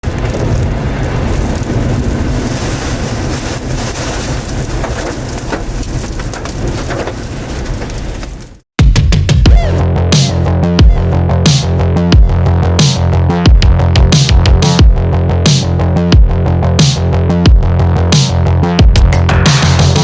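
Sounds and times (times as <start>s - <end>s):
heavy storm rain: 0.0s - 8.6s
wind rumbling on microphone: 0.0s - 8.6s
raindrops hitting microphone: 0.0s - 8.7s.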